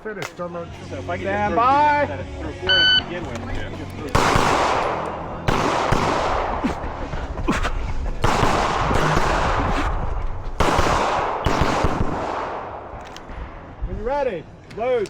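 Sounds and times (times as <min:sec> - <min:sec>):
pistol gunshots with echo: 0:04.1 - 0:07.0, 0:08.2 - 0:13.6.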